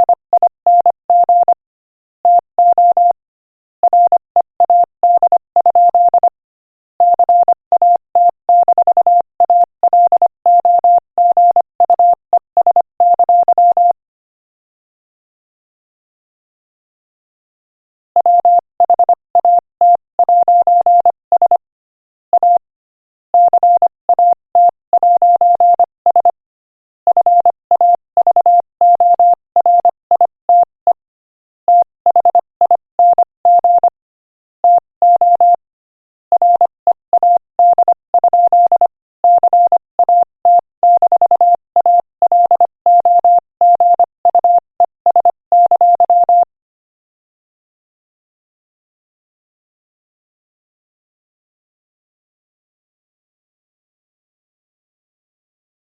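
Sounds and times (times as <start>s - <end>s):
morse code tone: 36.3s - 46.5s.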